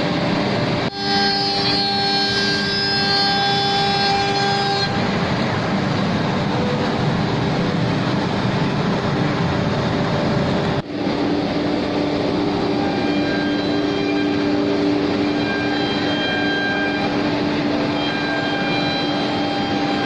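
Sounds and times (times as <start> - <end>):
router spindle cutting plywood: 0.1 - 5.8.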